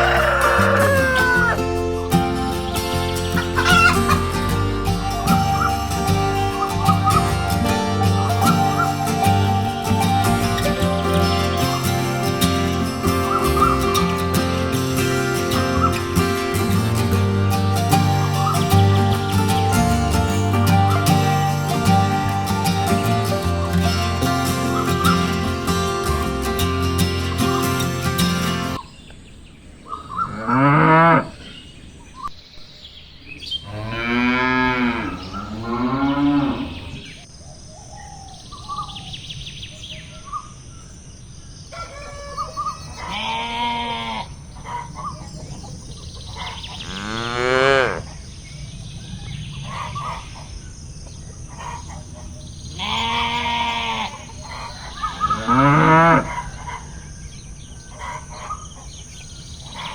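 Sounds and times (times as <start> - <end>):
cattle mooing: 0.0 - 2.0, 2.6 - 28.8, 30.3 - 31.4, 33.7 - 37.1, 46.8 - 48.1, 55.2 - 56.4.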